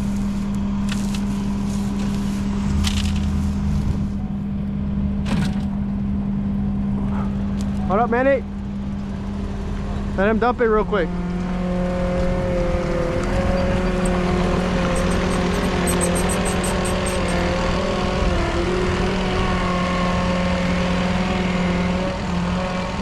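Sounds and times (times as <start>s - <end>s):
loader engine running: 0.0s - 23.0s
faint rapid ticking: 13.9s - 17.4s.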